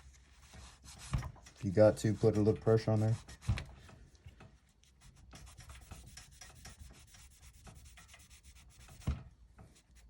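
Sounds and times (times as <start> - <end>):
towel scrubbing metal surface: 0.0 - 3.7, 5.0 - 9.2.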